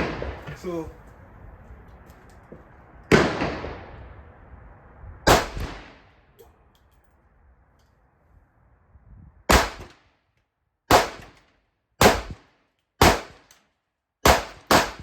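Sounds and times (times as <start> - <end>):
pistol shots: 5.3 - 6.1, 9.5 - 10.0, 10.9 - 11.4, 12.0 - 13.5, 14.2 - 15.0.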